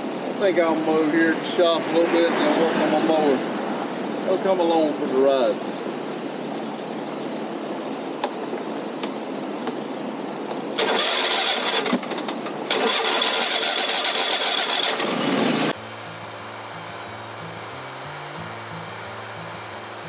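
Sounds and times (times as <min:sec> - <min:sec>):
riding lawn mower engine: 0:12.8 - 0:20.0.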